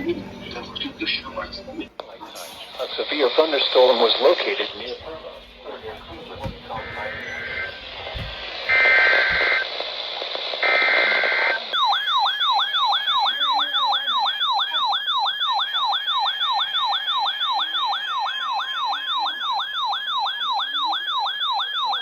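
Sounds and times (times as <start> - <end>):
radio hiss: 0.5 - 11.8.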